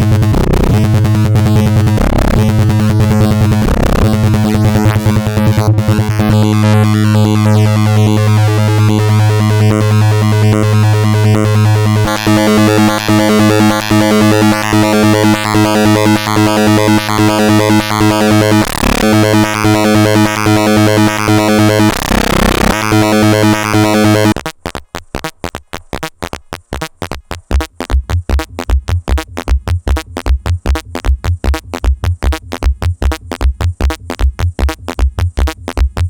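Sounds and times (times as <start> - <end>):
modular synth oscillator patch: 0.0 - 36.0
low thumps: 24.3 - 36.0.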